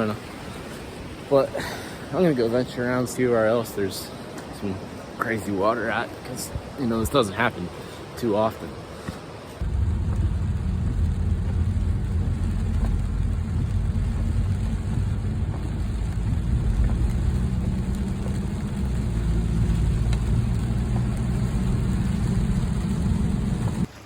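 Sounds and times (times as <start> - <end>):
car road and engine rumble: 9.6 - 23.9.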